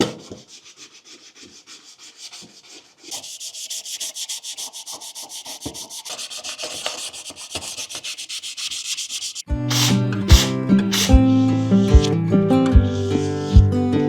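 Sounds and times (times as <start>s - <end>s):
sandpaper rubbing: 0.2s - 13.8s
music: 9.5s - 14.0s.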